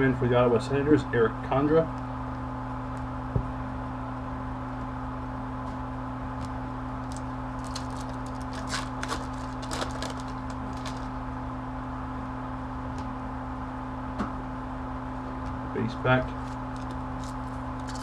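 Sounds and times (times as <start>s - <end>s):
electrical hum: 0.0s - 18.0s
foil wrappers crinkling: 6.4s - 11.2s, 16.3s - 18.0s.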